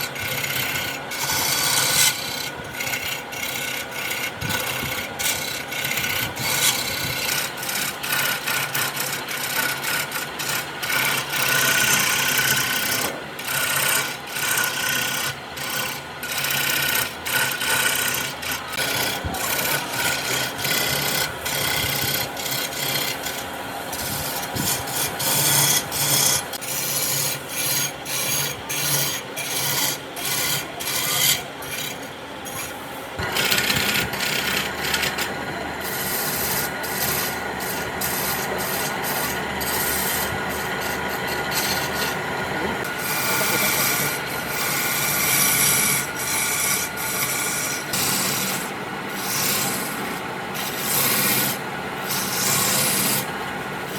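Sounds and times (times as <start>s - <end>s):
sanding wood: 0.0s - 53.9s.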